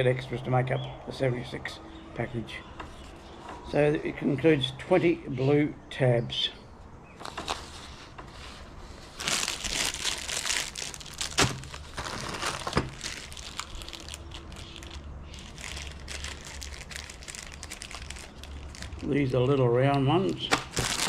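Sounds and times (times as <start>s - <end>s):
plastic packaging crinkling: 7.2s - 8.0s, 9.0s - 19.1s, 20.5s - 21.0s.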